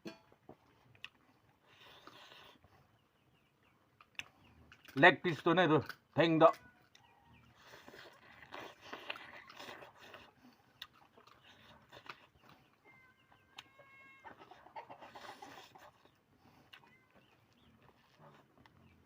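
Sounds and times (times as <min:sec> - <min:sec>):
chickens clucking: 0:06.2 - 0:19.0.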